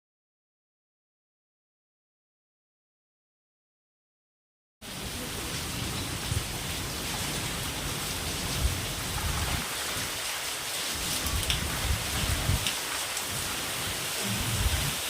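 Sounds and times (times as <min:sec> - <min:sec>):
rain hissing: 0:04.8 - 0:15.0
raindrop ticks: 0:09.1 - 0:13.4.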